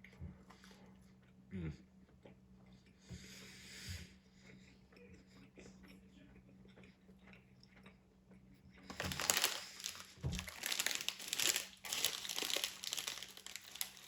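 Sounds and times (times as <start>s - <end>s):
food packaging crinkling: 8.9s - 14.0s.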